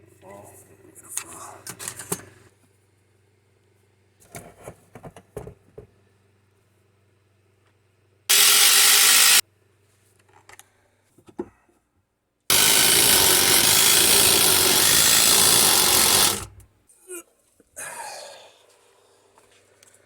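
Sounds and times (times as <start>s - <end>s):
power driver driving screws: 8.3s - 9.4s, 12.5s - 16.6s.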